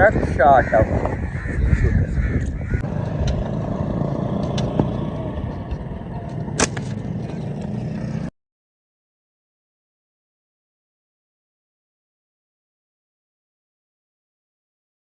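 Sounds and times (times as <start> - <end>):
low rumble: 0.8 - 8.3
sharp crack: 6.4 - 7.1.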